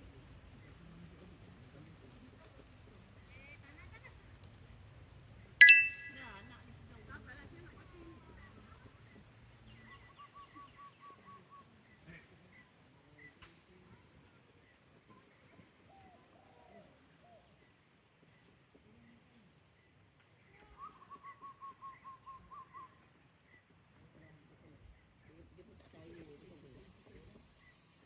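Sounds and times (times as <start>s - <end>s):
bird calls: 5.6s - 6.3s, 9.1s - 11.8s, 20.7s - 23.2s
higher bird chirps: 5.6s - 6.3s.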